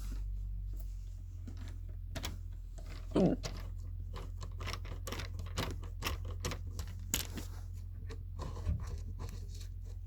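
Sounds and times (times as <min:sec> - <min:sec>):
tools clicking and tapping: 0:01.5 - 0:09.4.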